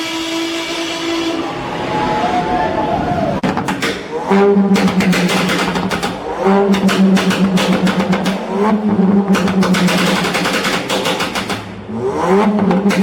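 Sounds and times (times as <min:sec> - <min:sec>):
car engine revving hard: 0:04.0 - 0:13.0
exhaust pops and crackles: 0:04.7 - 0:11.8, 0:12.4 - 0:13.0.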